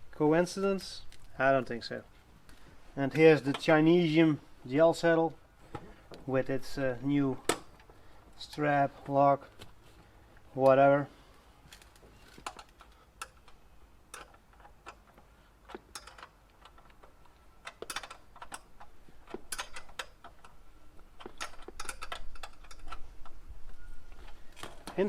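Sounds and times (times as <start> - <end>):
metallic clicks and knocks: 11.8 - 25.0.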